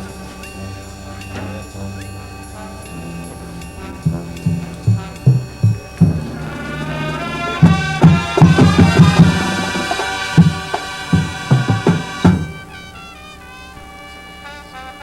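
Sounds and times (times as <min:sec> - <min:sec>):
marching band playing: 0:00.0 - 0:15.0
sharp drum hits: 0:03.8 - 0:12.9.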